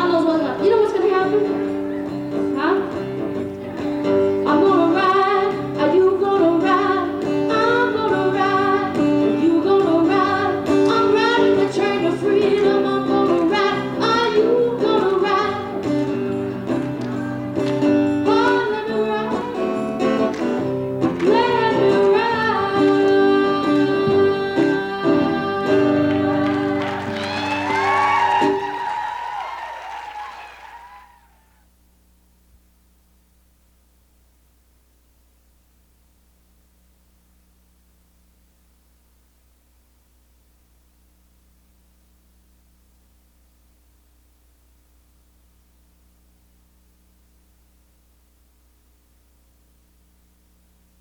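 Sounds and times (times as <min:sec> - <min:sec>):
guitar accompaniment: 0:00.0 - 0:30.5
person singing: 0:04.5 - 0:16.0, 0:18.2 - 0:20.2, 0:21.1 - 0:28.6.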